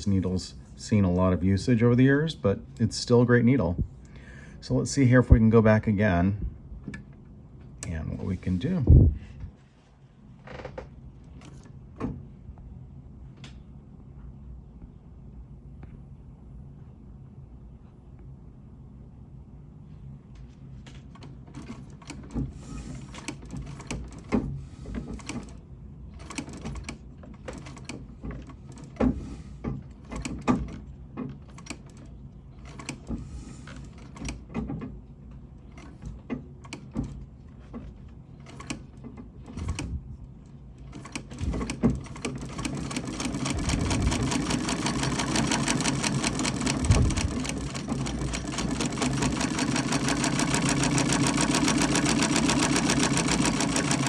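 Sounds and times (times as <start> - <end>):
sewing machine clicks and knocks: 21.0 - 40.0, 40.8 - 54.0
sewing machine stitching clatter: 21.1 - 29.2, 29.8 - 34.8, 35.6 - 40.0, 40.8 - 54.0.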